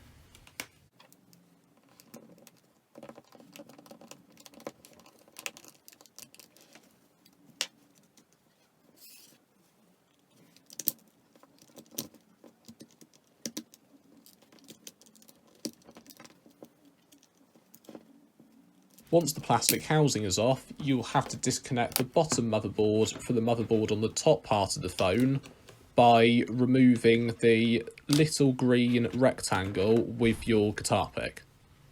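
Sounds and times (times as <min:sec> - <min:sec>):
plastic scraping on plastic: 0:18.8 - 0:31.0.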